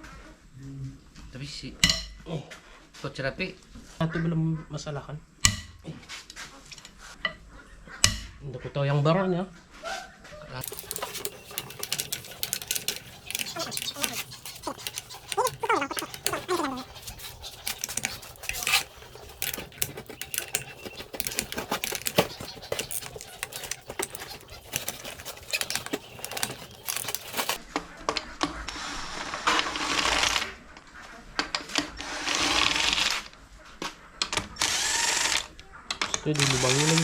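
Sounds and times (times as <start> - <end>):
metal engine parts clinking: 10.6 - 27.6.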